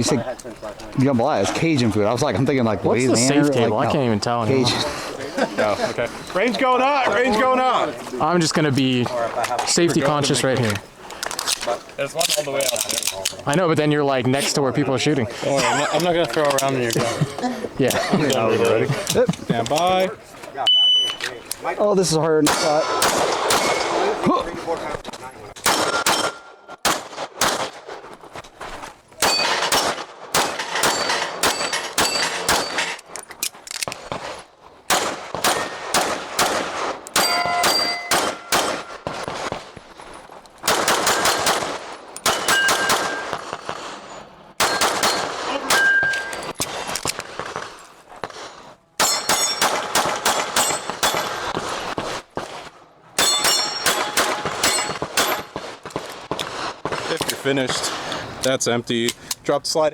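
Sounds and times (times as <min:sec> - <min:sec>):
pistol shots: 0:22.4 - 0:24.2, 0:25.6 - 0:27.9, 0:29.2 - 0:33.0, 0:33.8 - 0:39.8, 0:40.6 - 0:48.4, 0:49.0 - 0:58.0
steel targets ringing: 0:29.2 - 0:29.8, 0:30.5 - 0:33.0, 0:37.2 - 0:39.0, 0:42.3 - 0:43.4, 0:44.6 - 0:46.5, 0:49.0 - 0:51.5, 0:53.2 - 0:55.5.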